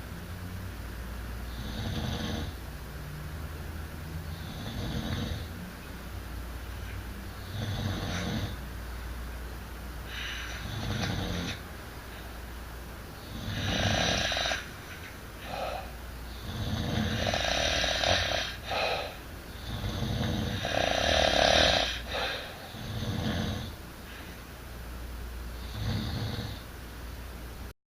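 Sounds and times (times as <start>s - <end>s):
rasping snores: 1.5s - 2.6s, 4.2s - 5.6s, 7.4s - 8.6s, 10.1s - 11.6s, 13.2s - 14.7s, 15.4s - 23.8s, 25.6s - 26.6s.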